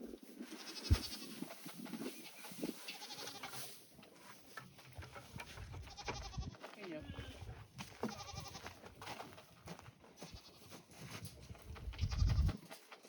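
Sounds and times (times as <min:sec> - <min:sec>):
goats bleating: 0:00.6 - 0:01.3, 0:02.9 - 0:03.6, 0:05.8 - 0:08.8, 0:10.2 - 0:10.7, 0:12.0 - 0:12.6.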